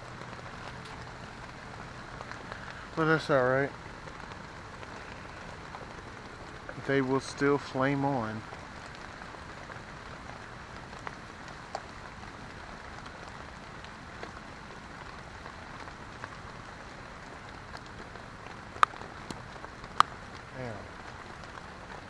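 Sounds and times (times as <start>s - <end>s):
heavy rain on a tent: 0.0s - 22.0s.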